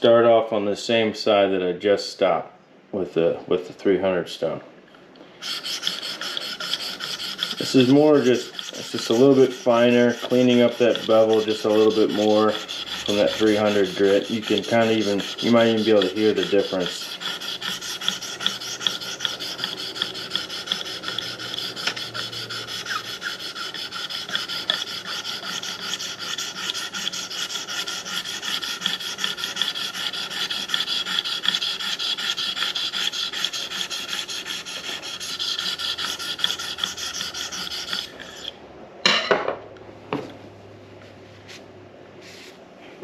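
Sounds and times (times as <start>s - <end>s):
sharpening stone scraping knife: 5.4s - 38.6s.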